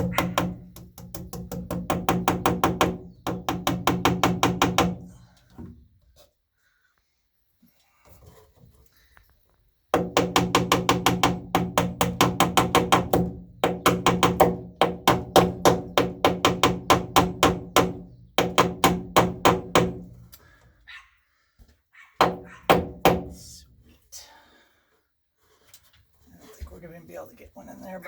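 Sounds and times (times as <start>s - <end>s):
hammer driving staples into wood: 0.0s - 5.1s.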